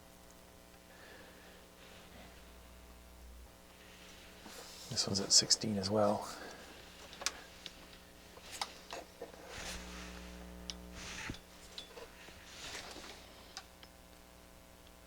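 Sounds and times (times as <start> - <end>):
low steady hum: 0.0 - 15.0
soft rustling: 1.4 - 2.9, 3.6 - 13.8.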